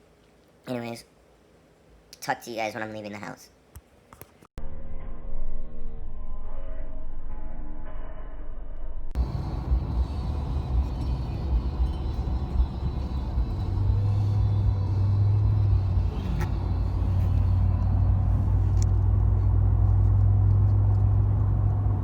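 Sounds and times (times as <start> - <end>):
strong low hum: 4.6 - 22.0
vehicle rumble from inside: 9.1 - 22.0.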